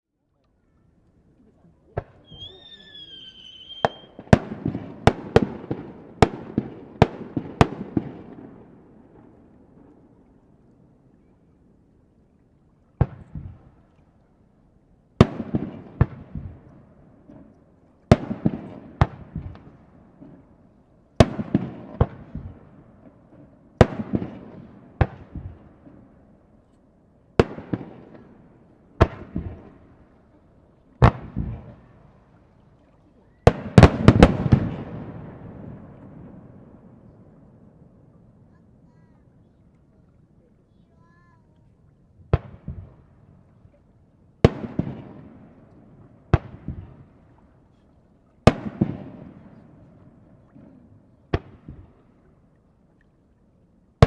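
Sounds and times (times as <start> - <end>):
fireworks bangs: 2.0 - 8.6, 33.4 - 37.1, 44.4 - 45.6, 48.4 - 49.7.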